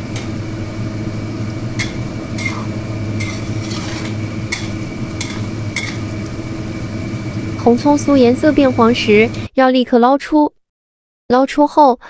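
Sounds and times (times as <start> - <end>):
low hum: 0.0 - 9.5
shallots sizzling in hot fat: 0.0 - 9.5
spatula scraping a pan: 1.8 - 6.1.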